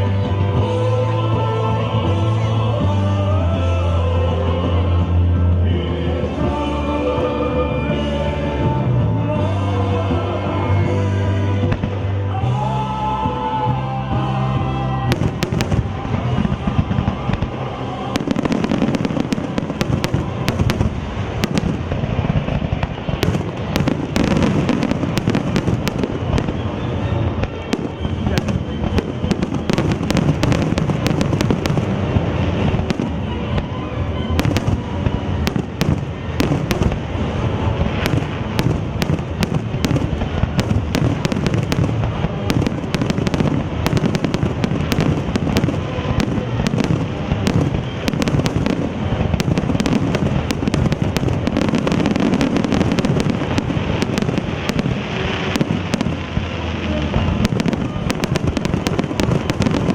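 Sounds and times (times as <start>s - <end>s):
sharp firework cracks: 15.1s - 26.8s, 27.4s - 33.8s, 34.4s - 59.9s.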